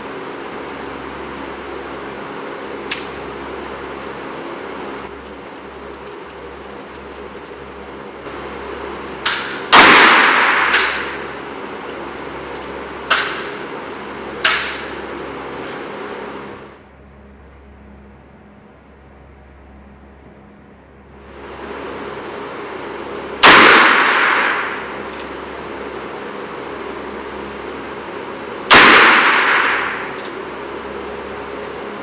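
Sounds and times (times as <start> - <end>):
steady low hum: 0.0 - 32.0
revolver shots echoing: 9.2 - 11.4, 23.4 - 25.1, 28.7 - 30.2.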